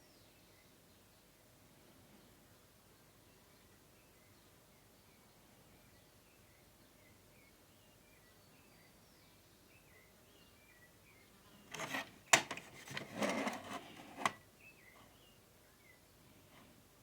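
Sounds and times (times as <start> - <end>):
packaging rubbing and rustling: 11.7 - 14.4.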